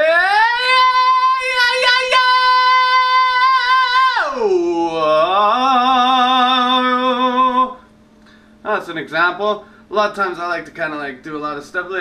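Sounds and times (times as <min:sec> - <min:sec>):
man singing wordlessly: 0:00.0 - 0:07.8.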